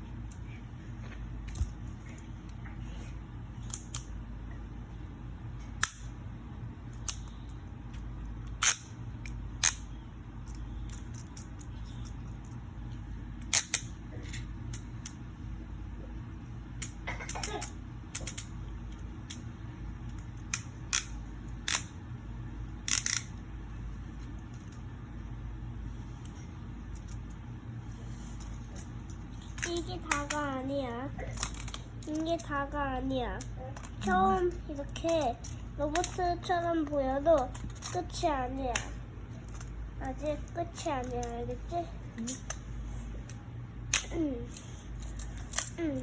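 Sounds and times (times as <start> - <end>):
steady low hum: 0.0 - 46.0
plastic toy parts clicking: 8.4 - 9.9, 13.4 - 15.2, 20.1 - 21.9, 22.9 - 23.4, 31.3 - 32.5, 33.8 - 36.2, 41.1 - 41.3, 43.9 - 45.8.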